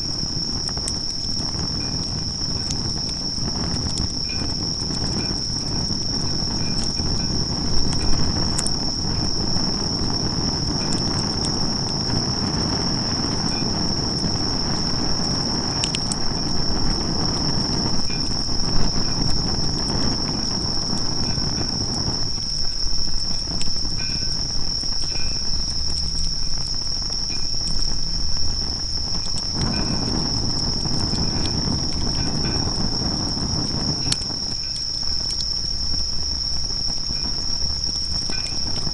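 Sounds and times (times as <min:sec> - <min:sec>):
insects trilling: 0:00.0 - 0:38.9
low rumbling noise: 0:00.0 - 0:38.9
faint lower chirping: 0:23.2 - 0:32.8.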